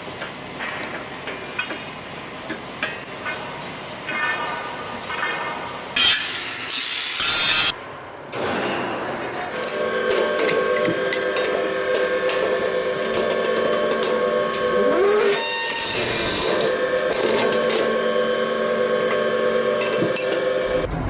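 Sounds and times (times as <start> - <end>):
factory machinery whining: 9.3 - 21.0
rising whine: 9.6 - 21.0.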